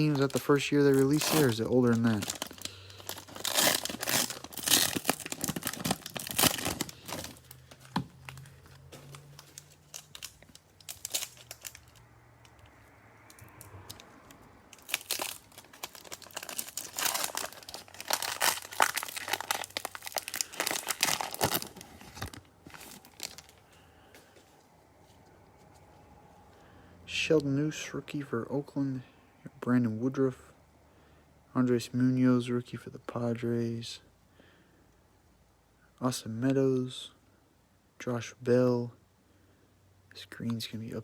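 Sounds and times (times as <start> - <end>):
cellophane crinkling and tearing: 0.0 - 12.0, 14.7 - 23.7.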